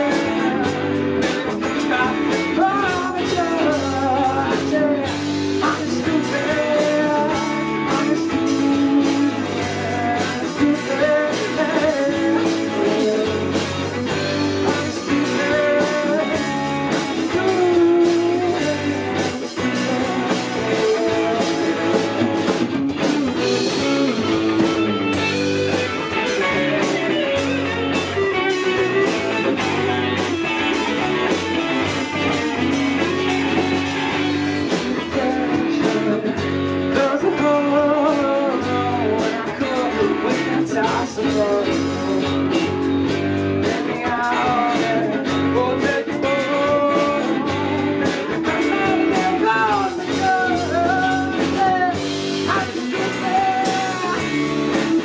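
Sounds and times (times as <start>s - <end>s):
person singing: 0.0s - 55.0s
rock band playing live: 0.0s - 55.0s.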